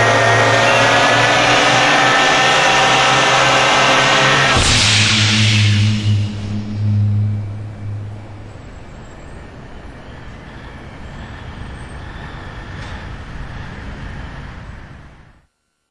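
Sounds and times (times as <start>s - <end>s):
low music: 0.0s - 9.2s
moving vehicle road noise: 0.0s - 15.3s.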